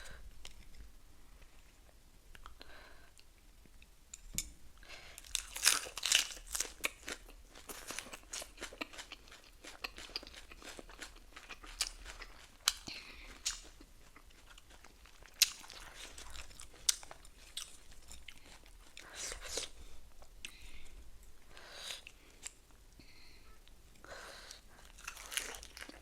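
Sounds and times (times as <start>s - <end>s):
person chewing crunchy food: 5.1s - 20.6s, 24.5s - 26.0s.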